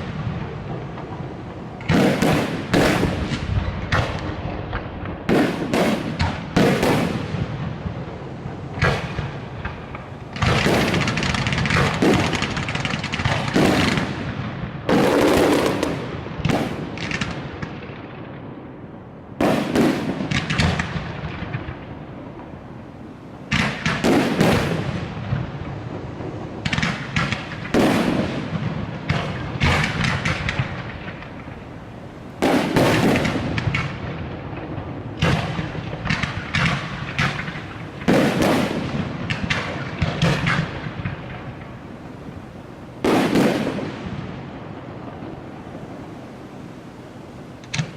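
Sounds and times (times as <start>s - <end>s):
crackling reports: 0.0s - 17.8s
fireworks bursting with bangs: 0.0s - 47.9s.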